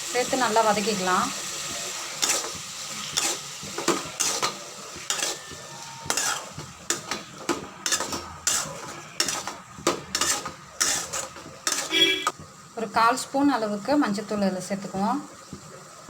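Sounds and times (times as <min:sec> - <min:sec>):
food sizzling in oil: 0:00.0 - 0:16.0
spoon scraping and knocking pan: 0:01.6 - 0:12.5.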